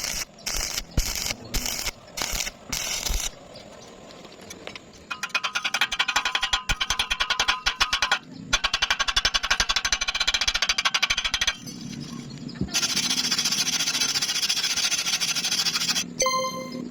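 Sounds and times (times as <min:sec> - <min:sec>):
welding arc crackling hiss: 0:00.0 - 0:03.4.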